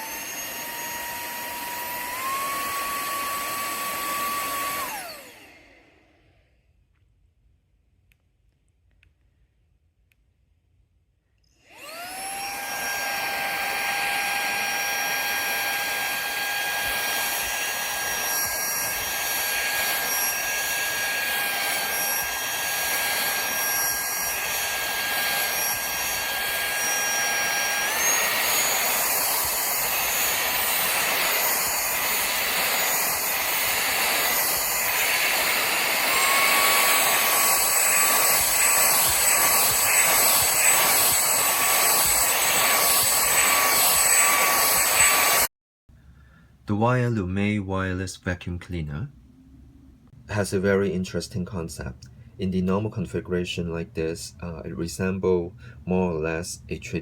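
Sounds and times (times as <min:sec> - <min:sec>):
handheld vacuum cleaner whine: 0:00.0 - 0:06.7, 0:11.4 - 0:45.5.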